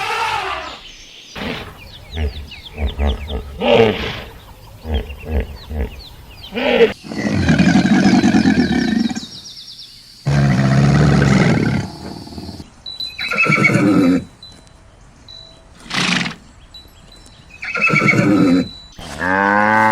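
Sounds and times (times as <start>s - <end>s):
large animal calling: 1.4s - 9.3s.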